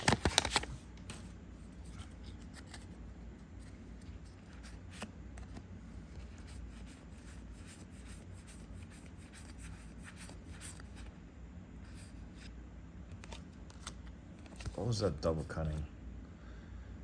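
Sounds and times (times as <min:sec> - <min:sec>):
cards rustling and clicking: 0:00.0 - 0:11.2, 0:13.1 - 0:15.0
low steady hum: 0:00.0 - 0:17.0.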